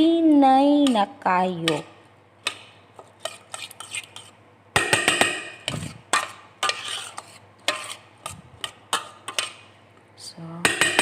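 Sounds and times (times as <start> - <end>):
utensils and pot clattering: 10.7 - 11.0.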